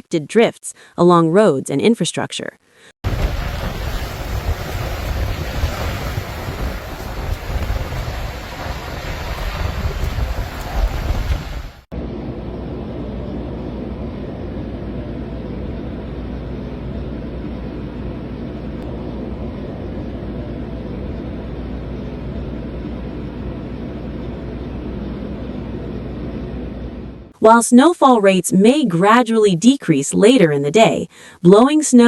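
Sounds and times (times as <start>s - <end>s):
wind gusting on microphone: 3.0s - 12.6s.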